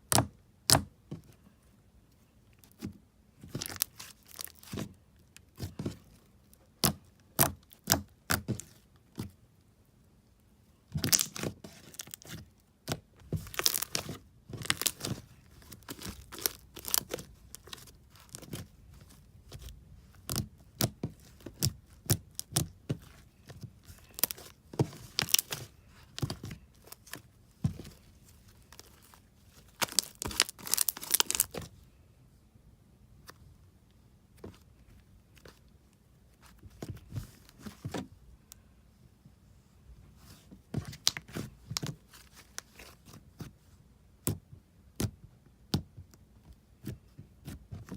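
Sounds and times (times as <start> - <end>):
slime squishing and popping: 11.0 - 18.7, 23.9 - 25.6, 29.7 - 31.6.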